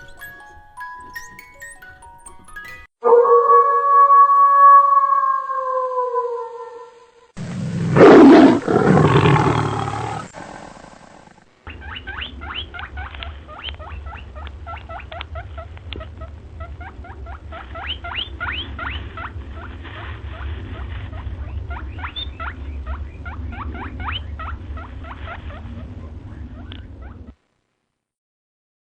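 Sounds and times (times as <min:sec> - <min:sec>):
chorus of chirping animal calls: 0:08.0 - 0:10.3, 0:11.2 - 0:27.4
steady low rumble: 0:11.5 - 0:27.4.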